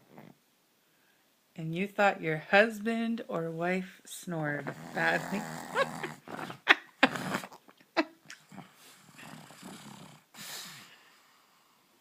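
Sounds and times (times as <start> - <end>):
dog snoring breaths: 4.6 - 6.2, 8.4 - 12.0
dog snorting: 4.6 - 7.6, 8.4 - 10.6
wheezy exhale: 8.8 - 12.0.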